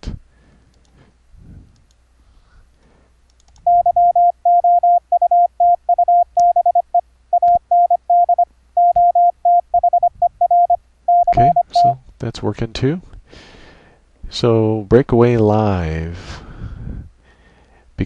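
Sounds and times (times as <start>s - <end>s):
morse code tone: 3.7s - 12.0s.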